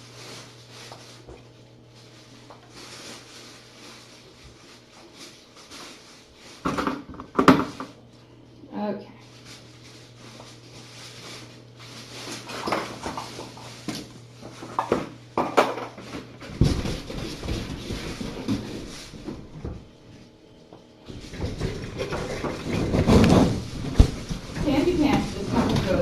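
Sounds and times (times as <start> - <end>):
continuous rustling: 0.0 - 7.9, 9.2 - 14.8, 21.0 - 26.0.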